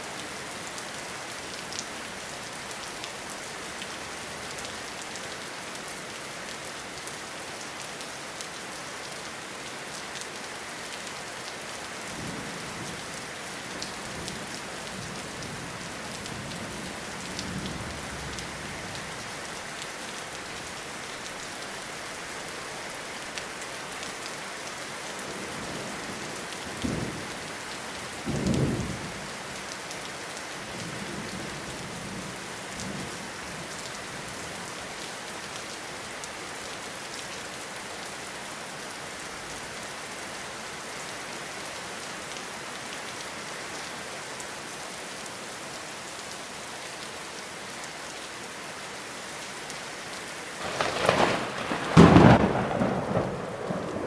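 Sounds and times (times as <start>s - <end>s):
steady rain hissing: 0.0s - 54.0s
thunder rumbling: 50.6s - 54.0s.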